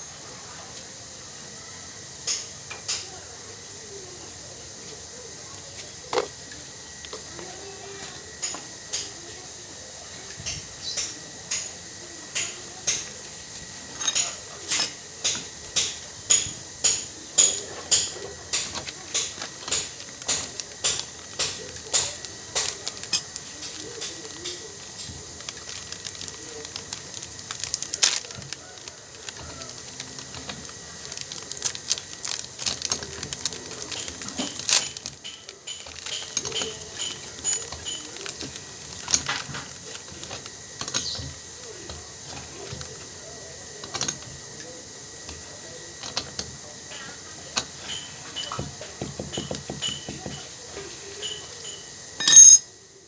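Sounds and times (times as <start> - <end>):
metal-on-metal taps: 52.2 - 52.7
metal clinks and clicks: 52.2 - 52.8.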